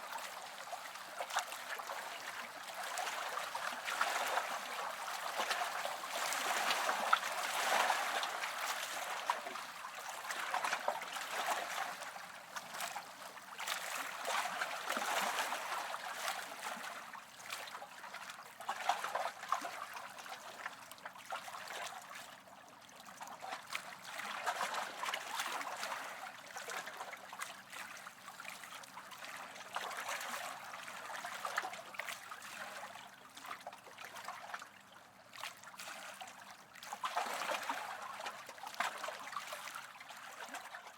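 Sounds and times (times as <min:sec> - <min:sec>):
small waves lapping on shore: 0:00.0 - 0:40.9.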